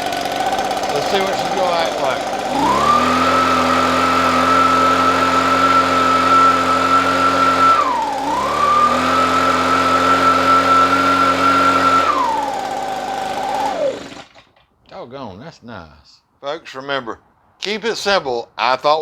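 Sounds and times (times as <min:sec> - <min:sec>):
leaf blower engine running: 0:00.0 - 0:14.5
person speaking: 0:00.9 - 0:02.4, 0:14.9 - 0:19.0.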